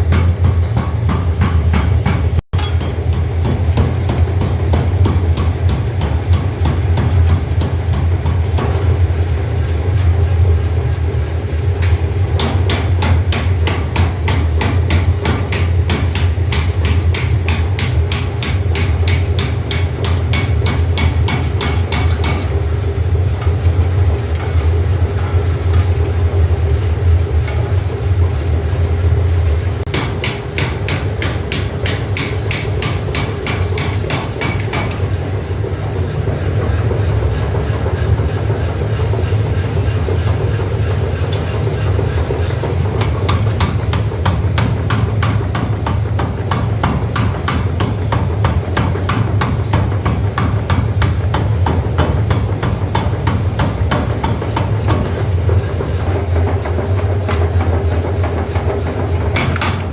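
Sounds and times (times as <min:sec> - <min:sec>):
low machine hum: 0:00.0 - 0:59.9
hammer striking steel rod: 0:00.1 - 0:08.8, 0:11.8 - 0:22.6, 0:29.9 - 0:35.1, 0:43.0 - 0:55.2, 0:59.4 - 0:59.9.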